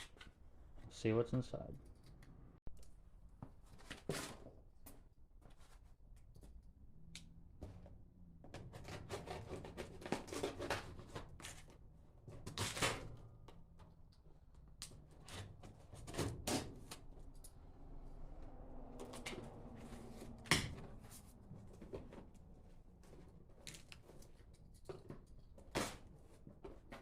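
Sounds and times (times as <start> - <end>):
packaging rustling and scraping: 8.7 - 11.8.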